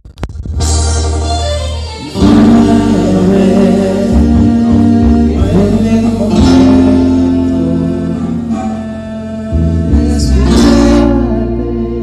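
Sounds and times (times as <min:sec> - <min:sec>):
guitar playing held notes: 0:00.4 - 0:12.0
band music with singing: 0:00.6 - 0:12.0.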